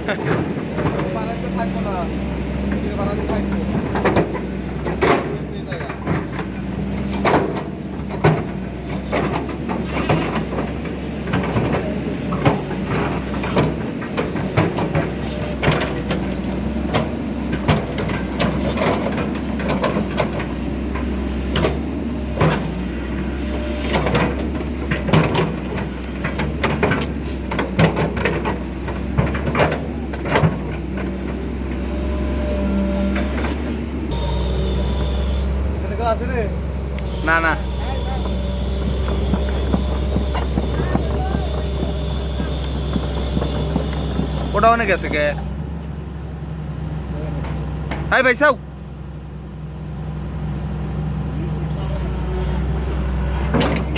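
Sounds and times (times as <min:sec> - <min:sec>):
excavator knocking and clattering: 0:00.0 - 0:48.6, 0:51.1 - 0:53.9
excavator diesel engine running: 0:00.0 - 0:53.9.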